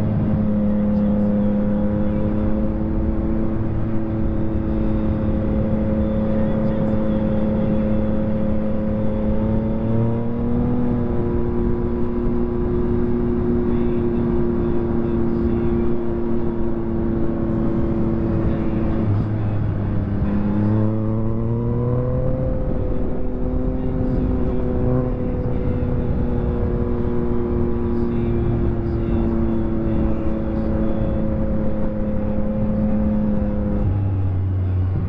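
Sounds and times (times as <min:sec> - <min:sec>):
motorcycle engine revving: 0:00.0 - 0:35.0.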